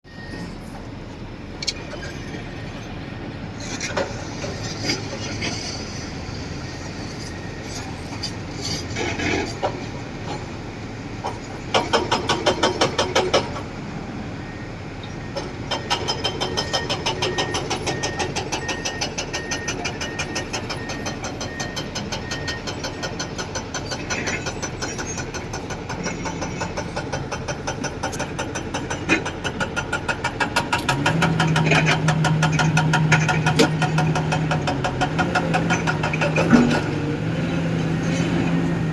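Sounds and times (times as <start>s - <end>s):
diesel machinery engine knocking: 3.6s - 14.0s, 14.6s - 38.9s
beeping alarm: 14.4s - 23.4s.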